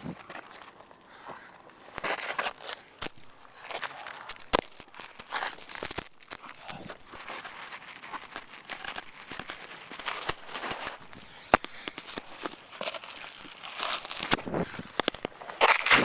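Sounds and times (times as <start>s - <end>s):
scuffs and crunches of climbing: 0.0s - 16.0s
hard breathing: 0.8s - 1.7s, 11.0s - 12.6s.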